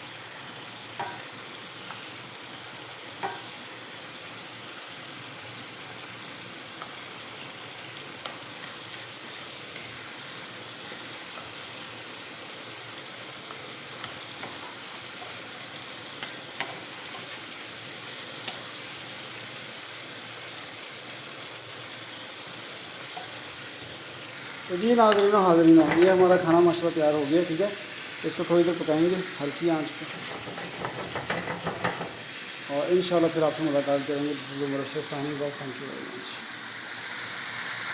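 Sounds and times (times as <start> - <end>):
curry sizzling in a pan: 0.0 - 37.9.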